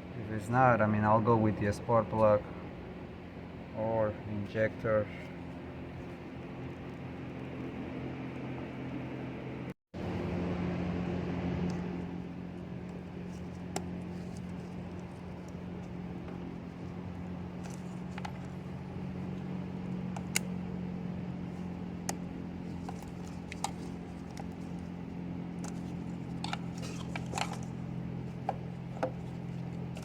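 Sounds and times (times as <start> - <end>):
car engine idling: 12.4 - 30.0.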